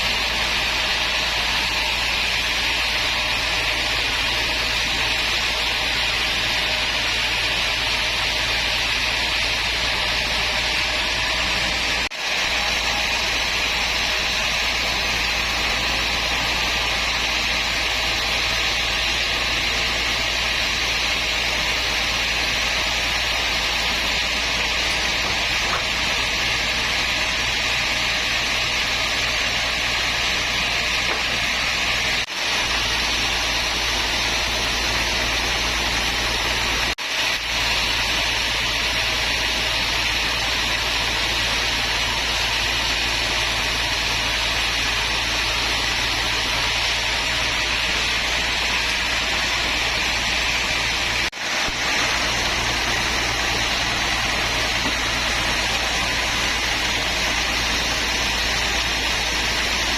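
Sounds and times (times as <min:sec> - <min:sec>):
woodworking machinery running: 0:00.0 - 0:59.9.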